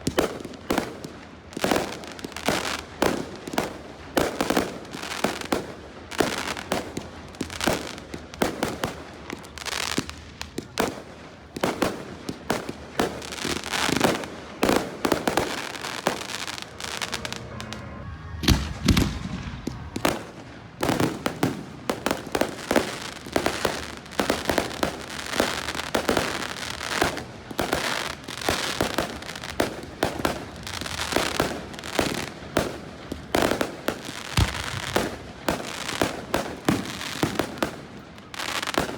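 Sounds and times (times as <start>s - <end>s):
fireworks bangs and crackles: 0.0s - 38.9s
deep firework boom: 15.1s - 21.2s, 34.4s - 35.2s.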